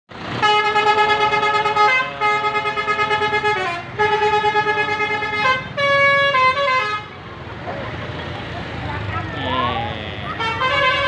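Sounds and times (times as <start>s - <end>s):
bus multi-trumpet air horn blasts: 0.3s - 7.2s, 9.4s - 11.0s.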